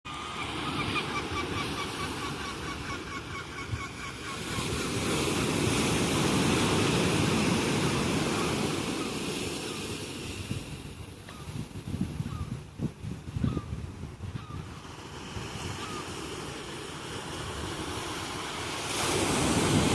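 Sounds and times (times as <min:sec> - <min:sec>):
ocean wave breaking: 0:00.1 - 0:11.2, 0:14.8 - 0:19.9
seagull calling: 0:00.2 - 0:06.4, 0:15.7 - 0:16.4.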